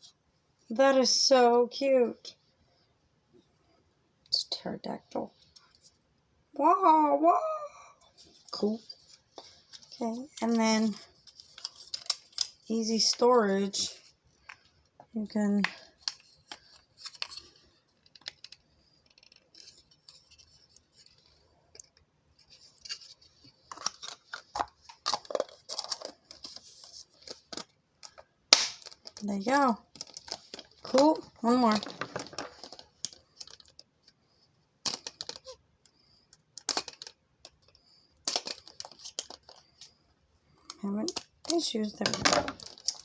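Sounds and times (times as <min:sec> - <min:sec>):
plastic toy pieces clicking: 0:34.8 - 0:35.6, 0:36.3 - 0:39.7.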